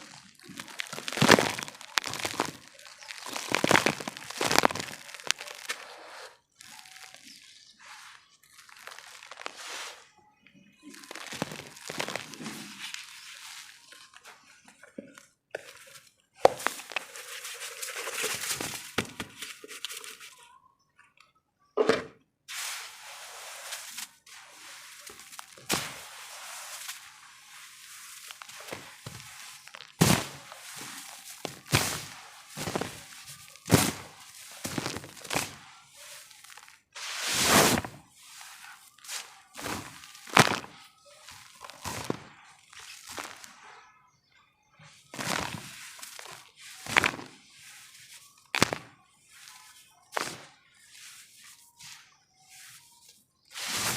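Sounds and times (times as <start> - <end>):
dirt lumps crunching and cracking: 0.0 - 20.4, 22.8 - 43.9, 44.8 - 53.9
dirt crumbling hiss: 23.6 - 38.0.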